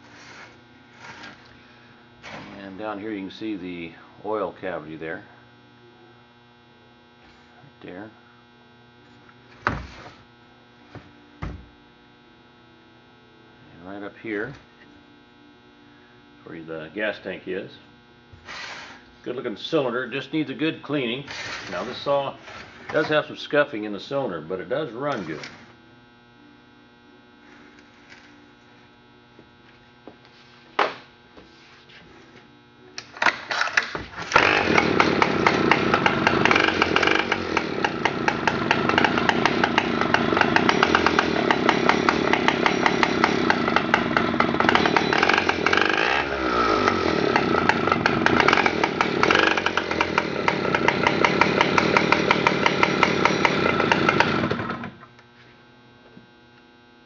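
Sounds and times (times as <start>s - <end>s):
cutoff saw engine running: 34.2s - 55.0s.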